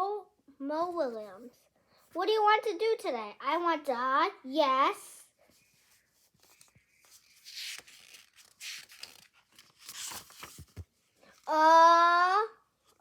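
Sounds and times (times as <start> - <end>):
paper pages rustling: 5.5 - 11.5
child calling out: 11.5 - 12.6.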